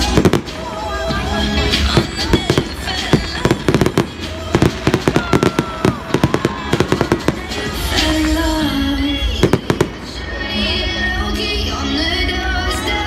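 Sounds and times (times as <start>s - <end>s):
fireworks crackling bangs: 0.0s - 10.3s
music with singing: 0.0s - 13.0s.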